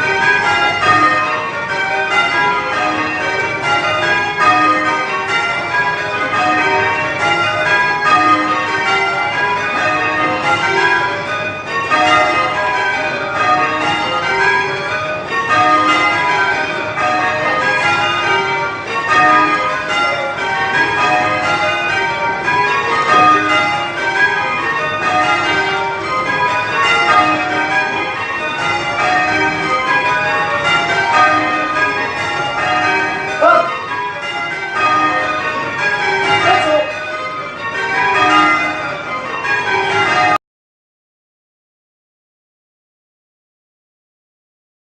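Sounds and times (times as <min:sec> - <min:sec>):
tower bells ringing changes: 0:00.0 - 0:40.4
person calling out: 0:33.4 - 0:33.8.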